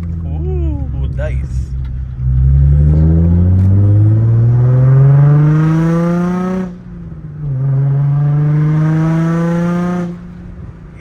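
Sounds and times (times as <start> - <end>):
car engine accelerating: 0.0 - 10.8.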